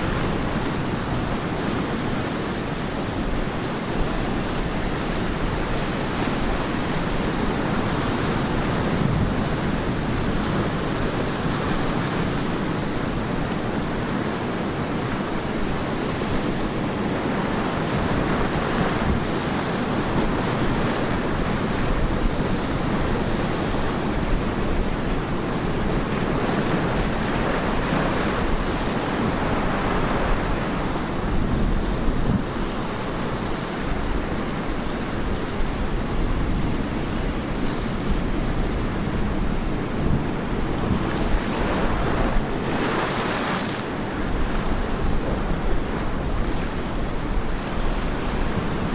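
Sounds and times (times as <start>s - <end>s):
ocean surf breaking: 0.0s - 48.9s
wind buffeting microphone: 15.0s - 48.9s.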